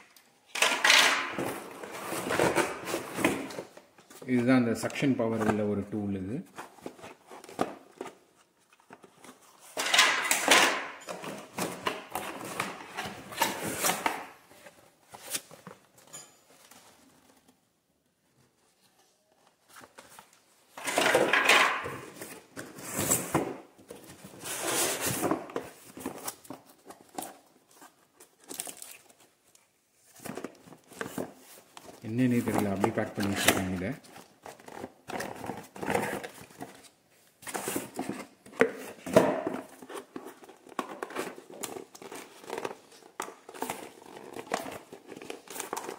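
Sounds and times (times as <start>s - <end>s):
packaging rustling and crinkling: 19.5s - 45.9s.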